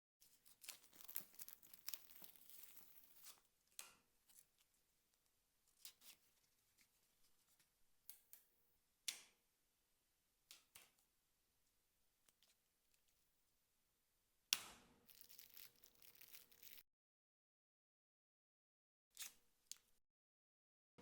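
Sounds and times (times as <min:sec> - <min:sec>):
packaging tearing and crinkling: 0:00.4 - 0:03.4, 0:15.1 - 0:16.8.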